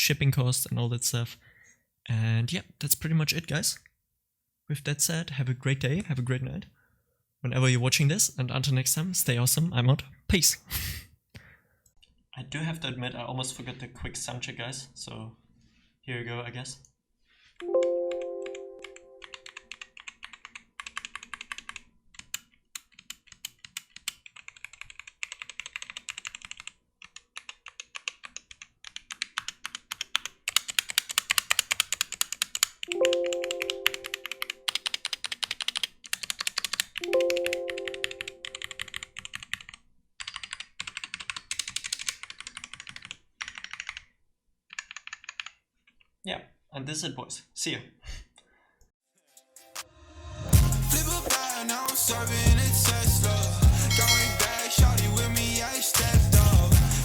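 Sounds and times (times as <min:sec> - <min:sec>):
mechanical keyboard typing: 0:17.8 - 0:44.1, 0:44.7 - 0:45.6
short ringing tone: 0:53.8 - 0:54.6.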